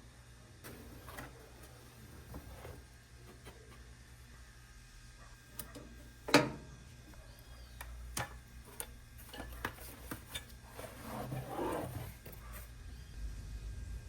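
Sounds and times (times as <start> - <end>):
clicks and knocks handling microwave: 5.6 - 6.6.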